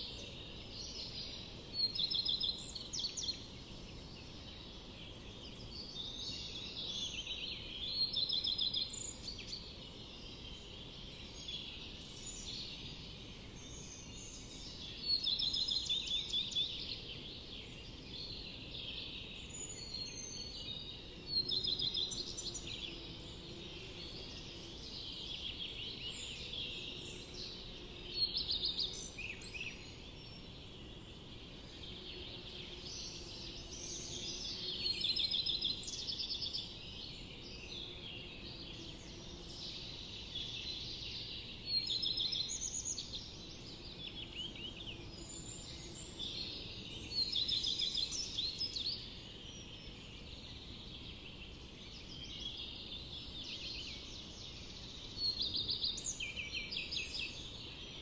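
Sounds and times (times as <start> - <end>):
birds singing: 0.0 - 58.0.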